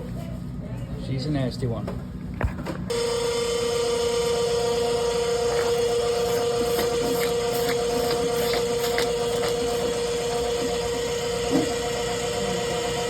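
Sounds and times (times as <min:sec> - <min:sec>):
drain-cleaning machine humming: 0:02.9 - 0:13.0.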